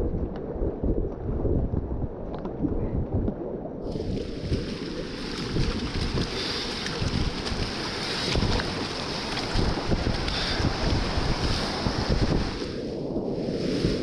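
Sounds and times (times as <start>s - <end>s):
low buffeting rumble on microphone: 0.0s - 14.0s
rushing whitewater: 3.9s - 12.8s.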